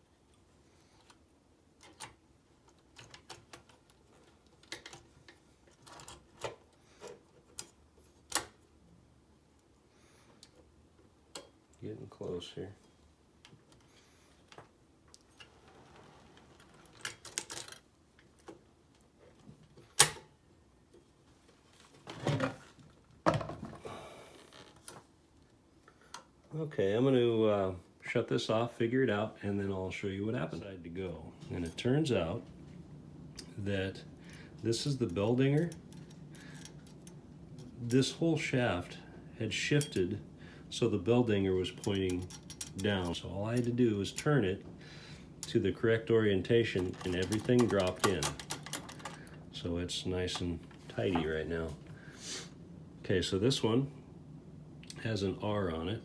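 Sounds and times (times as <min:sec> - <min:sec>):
typewriter parts clicking and clacking: 0:41.9 - 0:42.9, 0:46.8 - 0:49.2.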